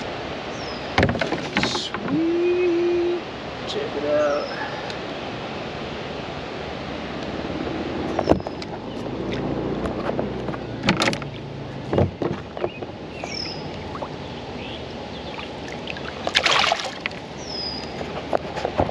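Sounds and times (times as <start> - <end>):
water noise: 0.0 - 18.9
knocks and splashes: 0.9 - 2.3, 9.3 - 13.0, 15.4 - 17.3.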